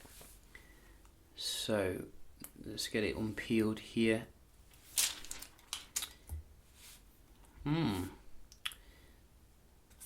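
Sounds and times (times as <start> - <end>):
murmured voice: 7.6 - 8.2.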